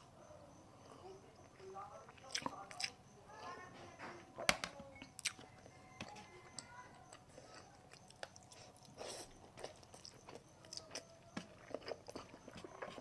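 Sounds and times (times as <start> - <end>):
person chewing food: 2.2 - 3.0, 5.2 - 13.0.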